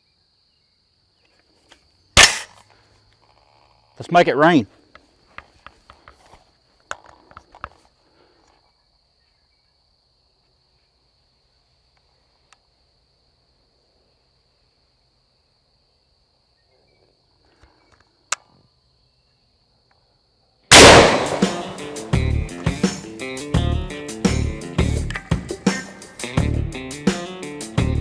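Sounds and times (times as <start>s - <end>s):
loud rifle shot: 2.2s - 2.5s, 20.7s - 22.2s.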